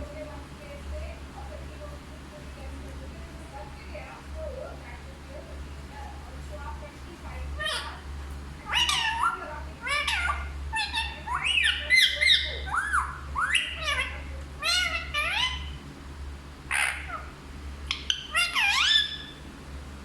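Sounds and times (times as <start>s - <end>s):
parrot squawking and chattering: 7.6s - 15.8s, 16.6s - 19.5s.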